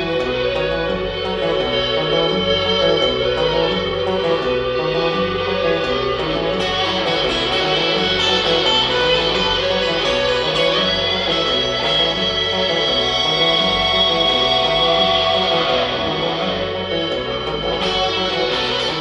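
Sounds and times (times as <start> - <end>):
guitar: 0.0 - 19.0
repeating bass line: 0.0 - 19.0.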